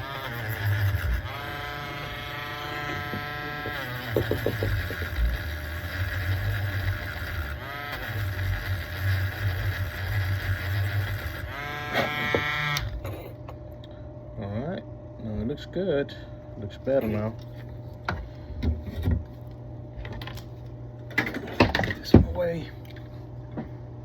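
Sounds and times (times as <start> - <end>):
small motor whining: 0.0 - 13.3.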